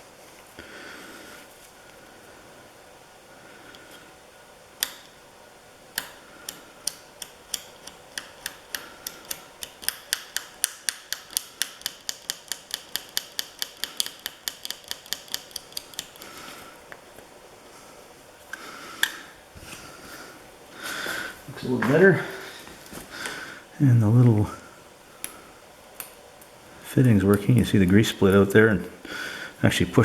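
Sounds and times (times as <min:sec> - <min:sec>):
grease gun clicking: 0:06.0 - 0:16.3.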